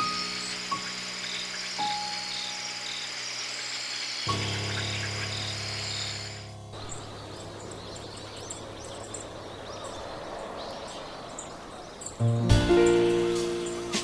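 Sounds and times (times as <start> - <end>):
outdoor ambience hiss: 0.0 - 14.0
songbirds chirping: 0.0 - 14.0.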